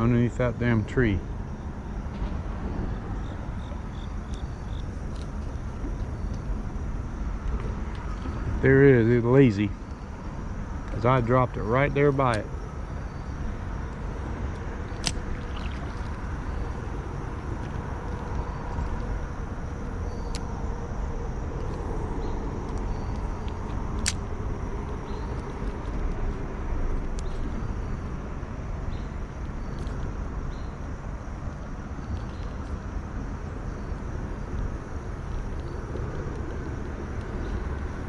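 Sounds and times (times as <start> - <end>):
low outdoor rumble: 0.0 - 38.0
sharp clicks: 15.0 - 15.4, 22.7 - 26.2.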